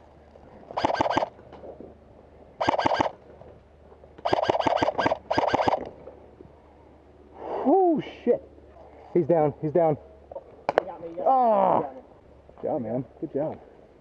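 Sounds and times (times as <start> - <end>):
airsoft rifle automatic bursts: 0.8 - 1.3, 2.6 - 3.2, 4.2 - 5.8.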